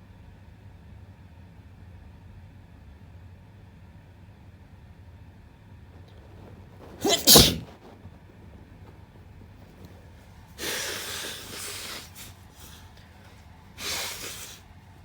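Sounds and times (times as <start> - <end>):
sharp intake of breath: 6.2 - 8.0, 10.6 - 12.8, 13.8 - 14.6
nose blowing: 6.2 - 8.1, 10.6 - 12.8, 13.8 - 14.6
person sneezing: 6.8 - 7.8, 10.6 - 12.3, 13.8 - 14.6.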